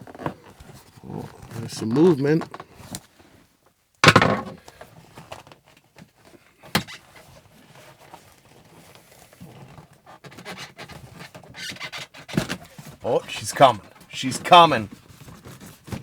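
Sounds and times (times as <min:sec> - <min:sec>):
loud knock: 0:04.0 - 0:04.6
leather rustling and scraping: 0:07.1 - 0:13.0.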